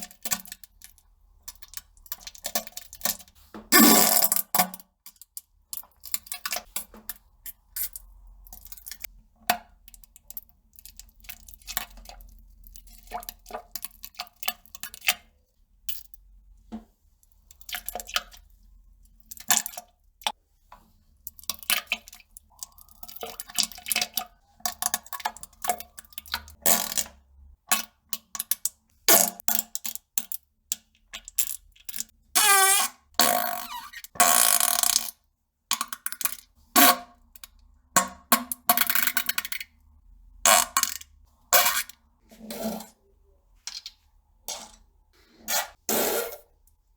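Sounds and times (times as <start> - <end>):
farts: 3.7 - 4.3
wet splats and plops: 21.2 - 26.6.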